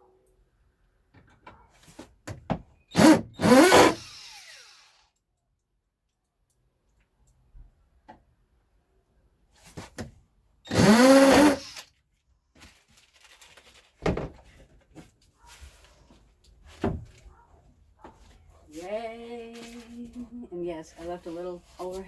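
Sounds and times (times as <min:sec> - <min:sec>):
knocks of handling wood and tools: 0:01.1 - 0:02.8, 0:09.6 - 0:10.2, 0:13.6 - 0:18.7
cordless drill motor: 0:02.9 - 0:05.1, 0:10.7 - 0:11.9.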